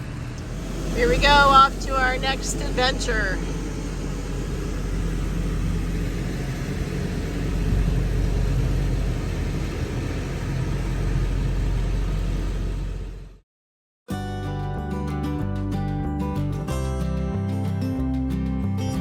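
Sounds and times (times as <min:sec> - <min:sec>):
truck engine driving: 0:00.0 - 0:13.4.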